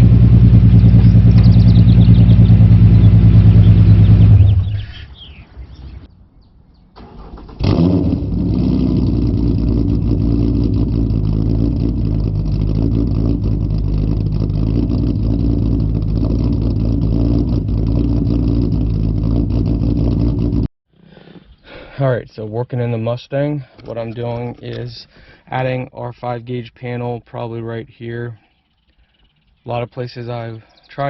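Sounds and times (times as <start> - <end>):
car engine starting and idling: 0.0 - 6.0, 6.9 - 20.7.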